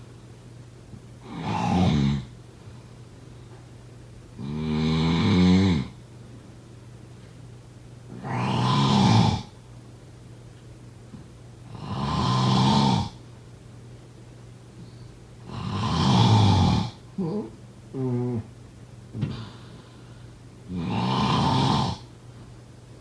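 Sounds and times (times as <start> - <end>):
person snoring: 1.2 - 2.3, 4.4 - 6.0, 8.1 - 9.5, 11.7 - 13.2, 15.5 - 18.5, 20.7 - 22.1.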